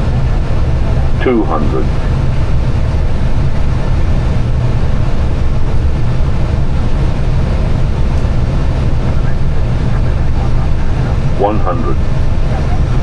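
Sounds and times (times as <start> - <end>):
airflow and engine rumble in cockpit: 0.0 - 13.0.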